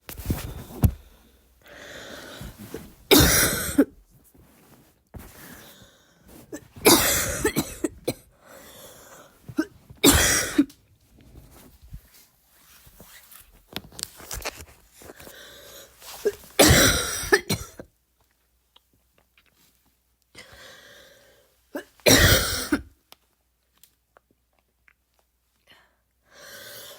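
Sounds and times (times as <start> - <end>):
woman coughing harshly: 3.1 - 4.0, 6.8 - 8.3, 9.6 - 10.7, 16.6 - 17.8, 21.8 - 22.9.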